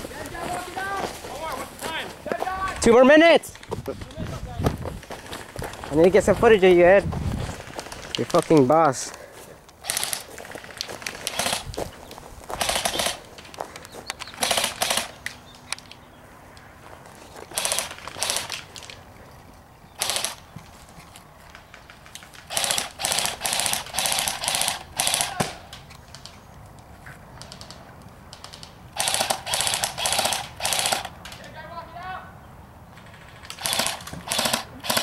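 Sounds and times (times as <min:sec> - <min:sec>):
airsoft guns firing bursts: 0:07.5 - 0:08.8, 0:09.8 - 0:11.7, 0:12.5 - 0:13.3, 0:14.2 - 0:15.2, 0:17.5 - 0:18.7, 0:20.0 - 0:20.4, 0:21.6 - 0:26.3, 0:27.4 - 0:31.4, 0:33.0 - 0:35.0.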